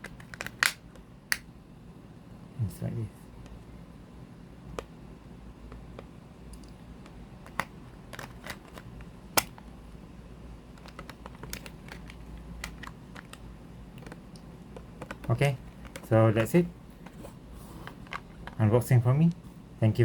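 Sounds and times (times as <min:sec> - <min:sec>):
low steady hum: 0:00.0 - 0:20.0
plastic clicks and taps: 0:05.7 - 0:09.6, 0:10.8 - 0:13.4, 0:14.0 - 0:16.5.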